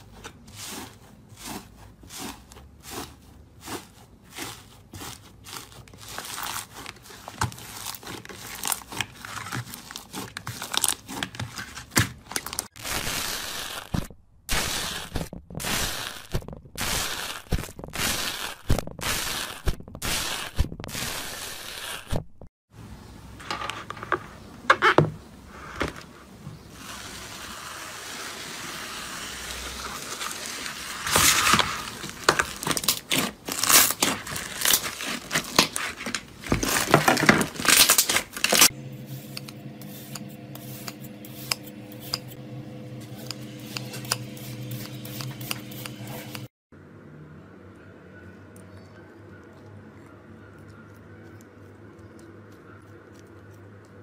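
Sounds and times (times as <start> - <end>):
steady hum: 38.7 - 48.2.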